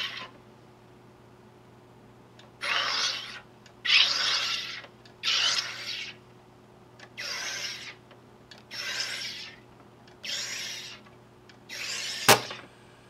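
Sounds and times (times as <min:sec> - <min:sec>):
carbon dioxide gas hissing: 0:08.7 - 0:09.6, 0:10.2 - 0:11.0, 0:11.7 - 0:12.4
sharp loud snap: 0:12.3 - 0:12.6.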